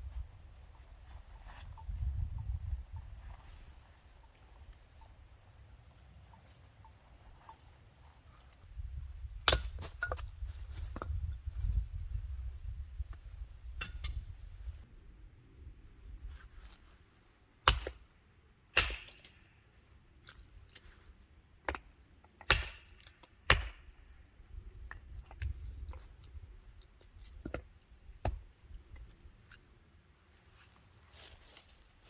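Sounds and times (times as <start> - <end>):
sharp knocks and cracks: 18.8 - 19.6, 21.6 - 24.0.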